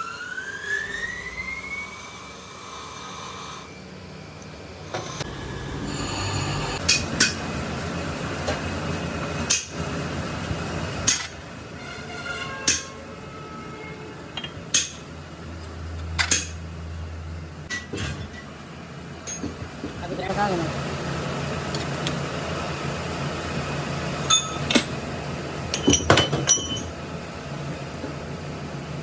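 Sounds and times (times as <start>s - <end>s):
steady low hum: 1.2s - 8.3s.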